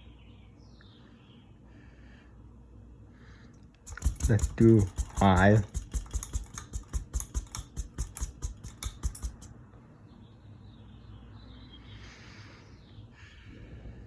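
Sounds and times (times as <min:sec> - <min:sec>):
ceiling fan humming: 0:00.0 - 0:14.0
irregular clicks: 0:03.5 - 0:09.5.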